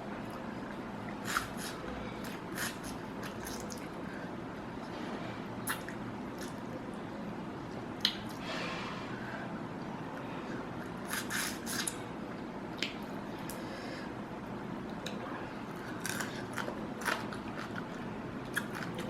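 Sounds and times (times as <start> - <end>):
lip smacks: 8.0 - 8.4.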